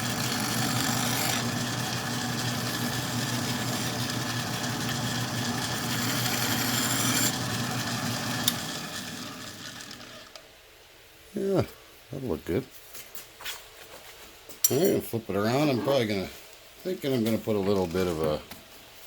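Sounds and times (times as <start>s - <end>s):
tool scraping metal: 0.0s - 5.0s, 5.7s - 7.4s
lathe humming: 0.0s - 10.4s.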